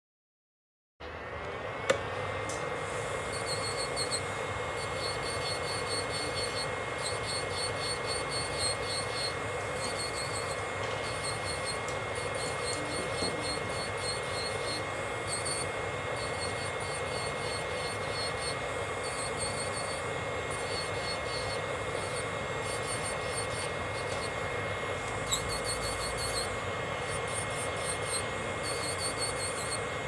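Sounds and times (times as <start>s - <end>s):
electric nail drill whining: 1.9s - 30.0s.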